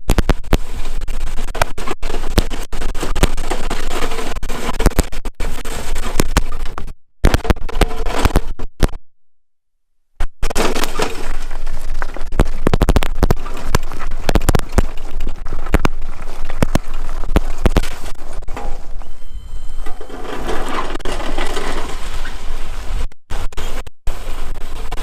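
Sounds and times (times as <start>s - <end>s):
sharp cracks and knocks: 0.0s - 9.0s, 10.2s - 19.0s
snow plow blade scraping snow: 1.8s - 6.6s, 7.7s - 8.4s, 17.8s - 23.0s.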